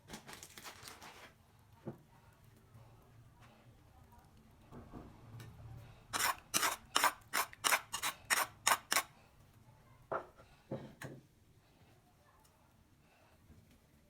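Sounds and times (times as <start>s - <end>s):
sharp cutting strokes: 6.2s - 9.1s.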